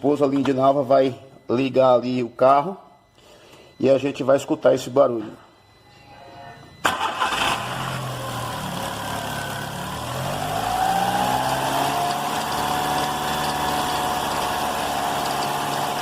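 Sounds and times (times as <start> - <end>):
high-pitched belt whine: 0.0 - 16.0
car engine starting and idling: 6.8 - 16.0.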